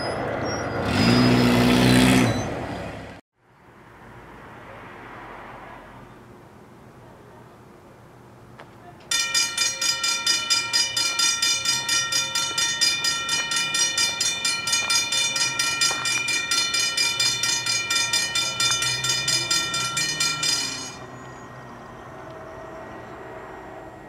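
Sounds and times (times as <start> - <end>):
railroad crossing bell ringing: 9.1 - 24.0.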